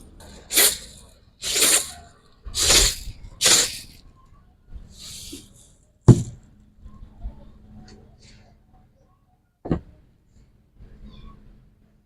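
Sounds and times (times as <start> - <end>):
spray bottle squirting: 0.4 - 2.0, 2.6 - 4.0, 5.0 - 5.5.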